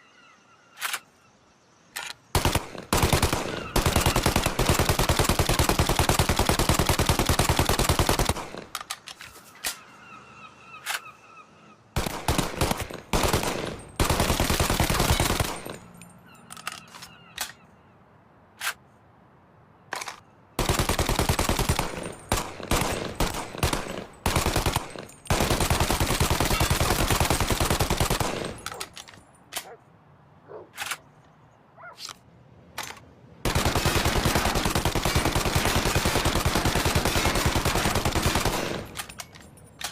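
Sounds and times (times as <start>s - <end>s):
submachine gun firing bursts: 2.3s - 8.7s, 12.0s - 15.8s, 20.6s - 28.8s, 33.4s - 39.2s.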